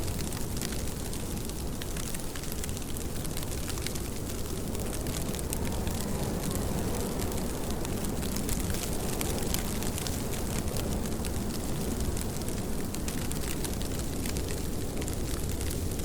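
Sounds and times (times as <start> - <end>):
steady rainfall: 0.0 - 16.0.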